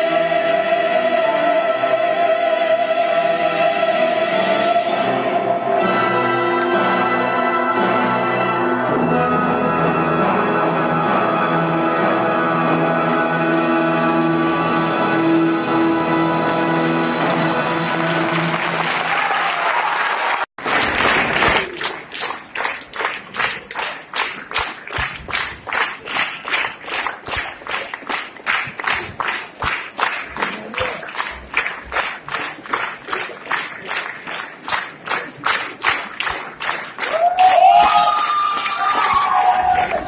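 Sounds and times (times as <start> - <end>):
orchestral music: 0.0 - 18.8
audience clapping in rhythm: 17.9 - 40.0.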